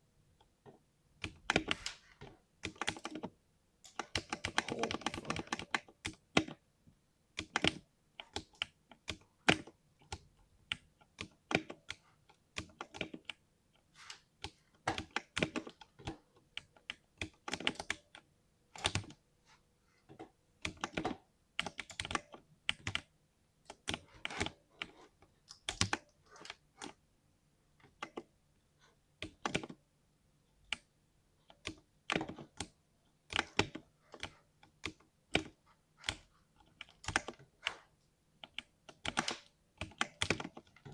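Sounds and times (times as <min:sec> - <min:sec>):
mechanical keyboard typing: 0:02.6 - 0:06.6, 0:07.4 - 0:12.0, 0:12.6 - 0:13.4, 0:14.4 - 0:19.2, 0:20.6 - 0:23.1, 0:23.7 - 0:27.0, 0:29.2 - 0:29.8, 0:31.5 - 0:37.8, 0:38.4 - 0:40.9.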